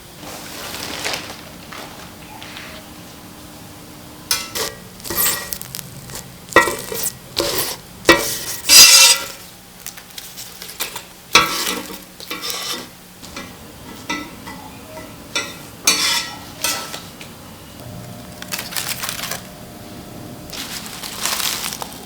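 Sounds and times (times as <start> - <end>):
utensil scraping in a pan: 4.3 - 9.5, 10.2 - 14.4, 15.4 - 17.1
food sizzling: 4.3 - 13.0.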